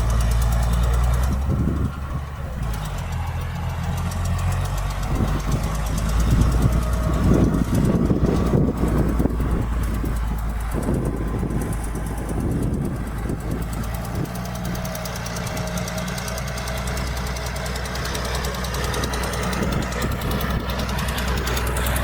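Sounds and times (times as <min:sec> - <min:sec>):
diesel engine droning with rattle: 0:00.0 - 0:22.0.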